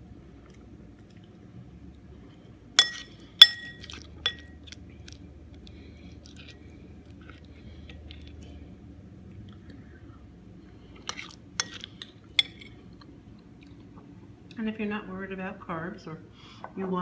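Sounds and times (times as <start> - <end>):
utensil clinking against dish: 2.8 - 4.6, 11.1 - 12.8.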